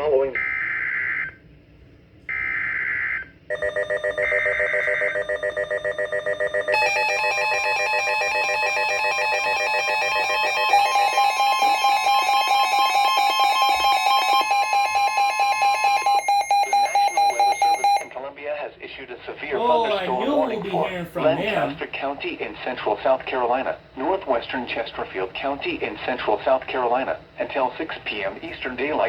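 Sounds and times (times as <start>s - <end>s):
steady warning alarm tone: 2.4s - 18.1s
alert radio alarm beeping: 3.5s - 18.1s.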